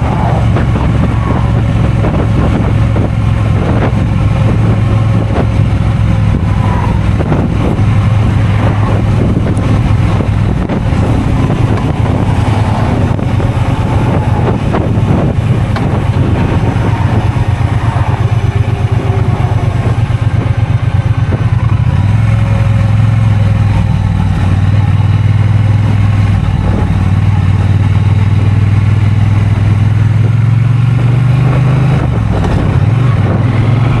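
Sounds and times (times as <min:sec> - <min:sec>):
motorcycle engine running: 0:00.0 - 0:34.0.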